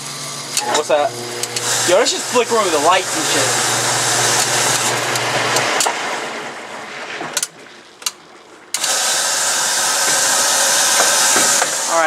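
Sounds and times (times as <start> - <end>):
appliance motor whooshing: 0.0 - 7.5.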